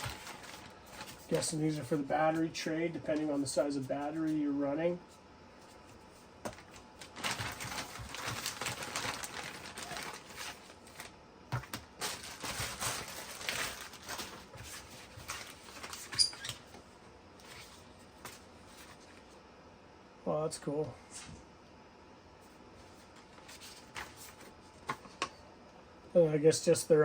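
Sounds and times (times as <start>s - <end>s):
paper packaging rustling: 0.0s - 4.3s, 5.6s - 16.8s, 22.8s - 25.2s.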